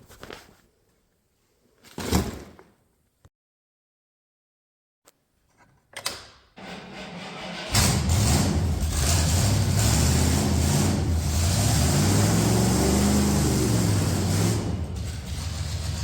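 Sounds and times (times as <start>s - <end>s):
engine idling and revving: 6.6s - 16.0s.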